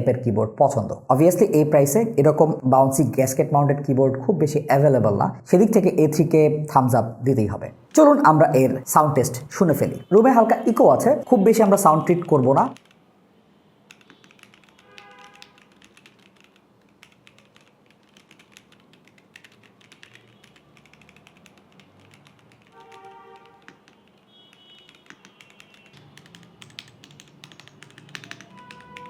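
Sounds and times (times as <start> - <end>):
mechanical keyboard typing: 11.6 - 13.0, 13.8 - 29.0.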